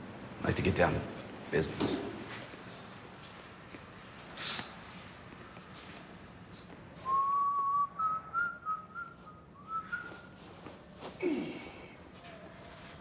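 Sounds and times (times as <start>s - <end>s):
person whistling a tune: 7.0s - 10.4s.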